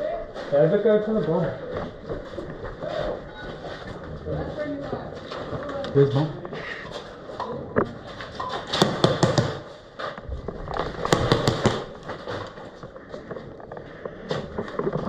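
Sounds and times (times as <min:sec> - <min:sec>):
airsoft guns firing rapidly: 0:08.8 - 0:09.6, 0:11.1 - 0:11.9.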